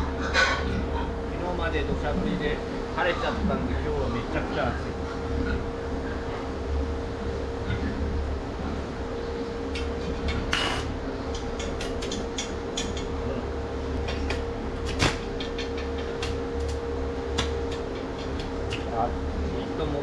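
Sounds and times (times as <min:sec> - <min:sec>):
low machine hum: 0:00.0 - 0:20.0
sharp clicks and knocks: 0:11.3 - 0:13.1.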